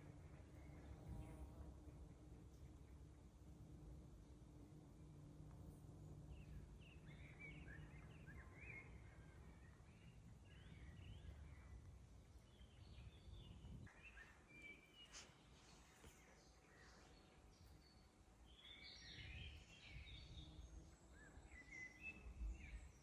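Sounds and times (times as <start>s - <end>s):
songbird chirps: 5.6s - 23.0s.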